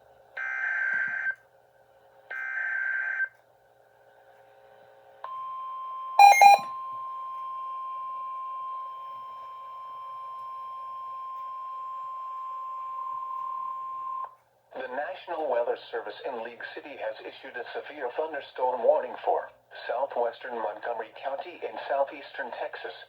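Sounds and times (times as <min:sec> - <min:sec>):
steady warning alarm tone: 0:06.2 - 0:06.7.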